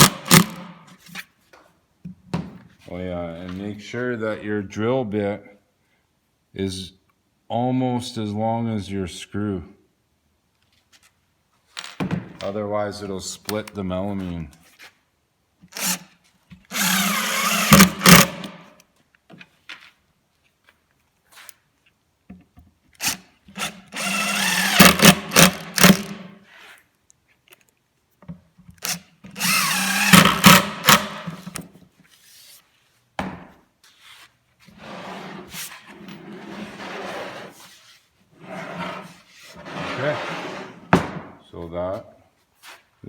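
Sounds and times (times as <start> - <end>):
power drill running into panel: 16.7 - 18.6, 23.0 - 26.3, 28.8 - 31.4.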